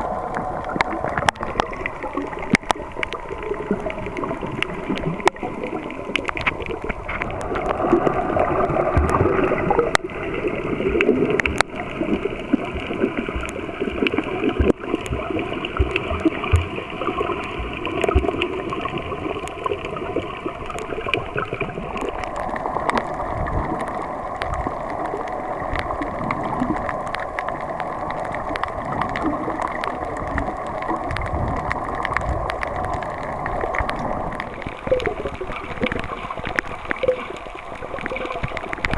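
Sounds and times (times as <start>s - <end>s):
sharp clicks underwater: 0.0s - 38.9s
underwater gurgling and sloshing: 0.0s - 38.9s.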